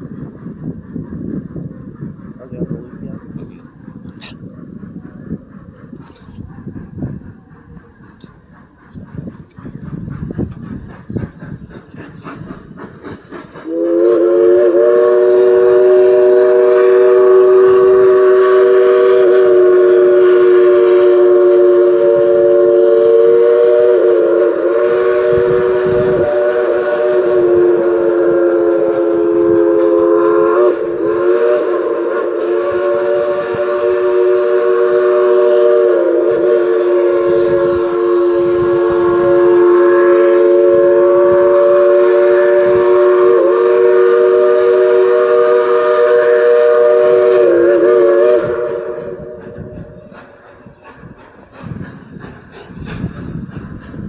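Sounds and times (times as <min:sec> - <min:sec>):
steam locomotive whistle chord: 0:13.6 - 0:50.0.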